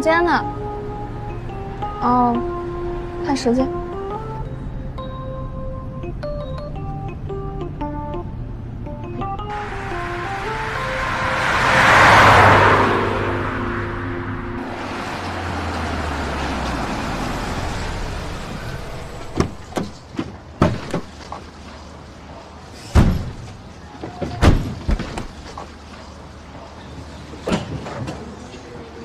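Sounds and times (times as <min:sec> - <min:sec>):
car engine rumble: 0:00.0 - 0:29.0
car doors opening and shutting: 0:17.9 - 0:21.4, 0:22.7 - 0:25.6, 0:27.4 - 0:28.3.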